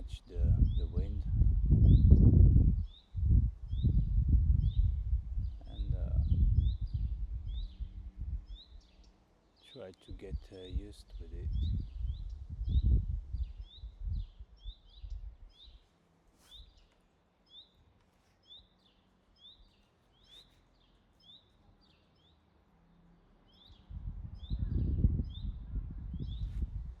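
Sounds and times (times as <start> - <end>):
wind buffeting microphone: 0.0 - 8.9, 10.1 - 15.8, 23.6 - 27.0
small bird chirping: 1.8 - 22.6, 23.4 - 26.8.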